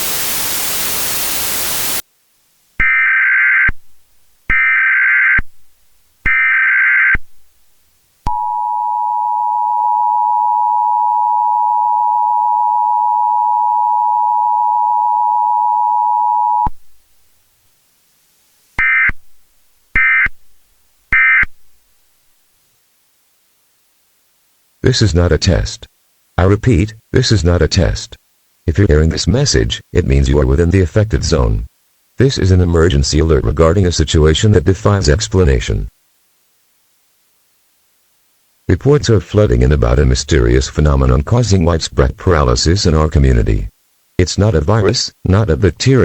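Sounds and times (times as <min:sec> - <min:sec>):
harsh data bursts: 0:00.0 - 0:02.0
burst of static: 0:00.0 - 0:02.1
two-tone attention signal: 0:08.3 - 0:16.7.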